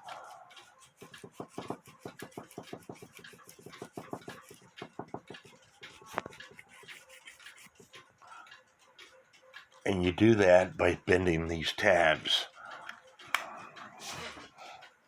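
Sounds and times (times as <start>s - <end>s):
brush scrubbing metal: 0.0s - 8.0s.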